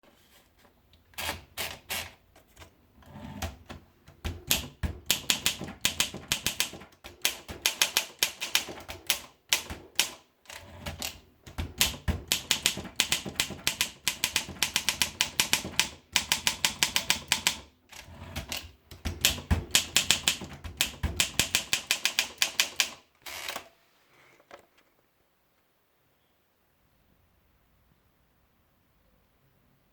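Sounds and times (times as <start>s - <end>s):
typewriter key strikes: 19.0s - 23.0s.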